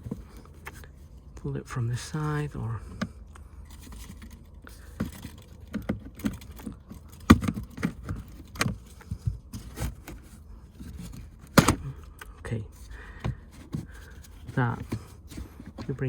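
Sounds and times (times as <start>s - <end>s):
plastic trim panel clicking and rattling: 3.7s - 12.3s.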